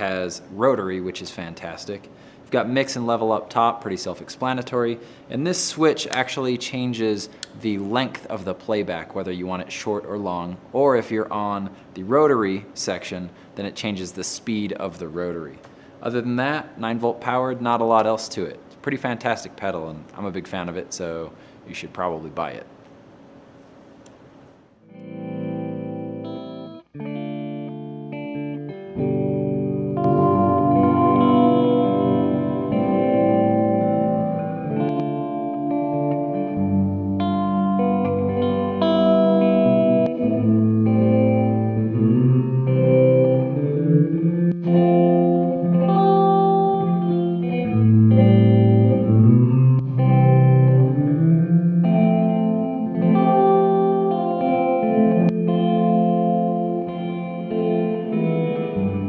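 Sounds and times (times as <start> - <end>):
electric guitar strumming chords: 24.8 - 59.0.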